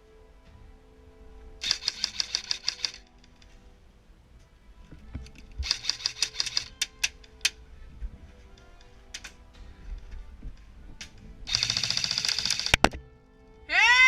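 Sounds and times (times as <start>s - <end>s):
airsoft rifle firing clicking shots: 1.6s - 3.1s, 5.6s - 7.6s, 11.0s - 13.0s.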